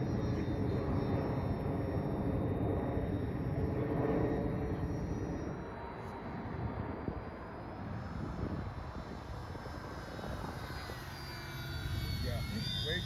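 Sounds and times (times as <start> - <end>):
model plane motors whining: 8.0 - 13.0.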